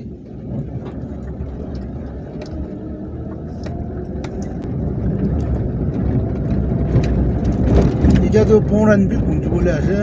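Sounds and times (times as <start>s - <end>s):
vehicle engine running: 0.0s - 10.0s.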